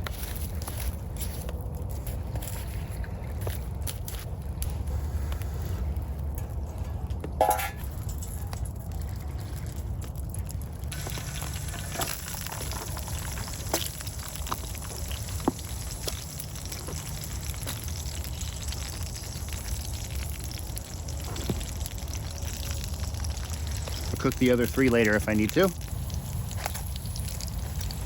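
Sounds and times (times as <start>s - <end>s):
food sizzling in a pan: 10.9s - 24.2s.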